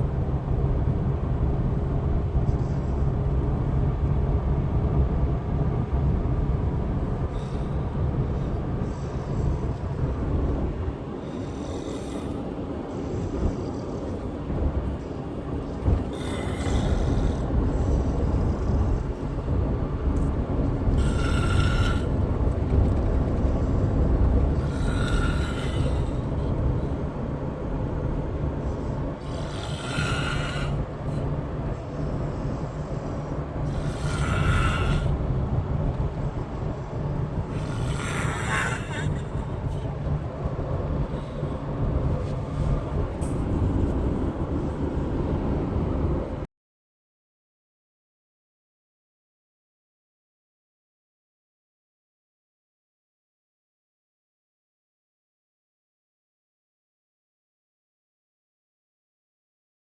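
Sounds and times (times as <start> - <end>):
steady low rumble: 0.0 - 46.5
person snoring loudly: 21.0 - 22.1, 24.6 - 26.2, 29.2 - 30.8, 33.7 - 35.1, 37.5 - 39.2.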